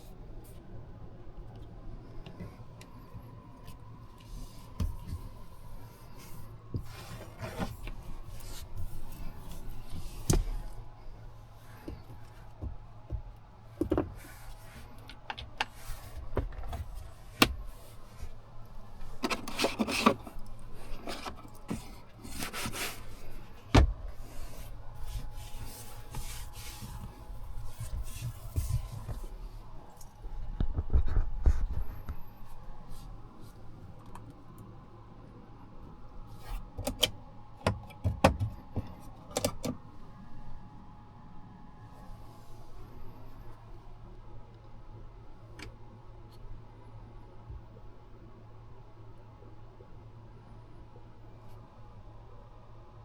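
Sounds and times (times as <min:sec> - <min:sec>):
steady low hum: 0:00.0 - 0:53.0
rubbing and scraping handling noise: 0:02.3 - 0:34.3.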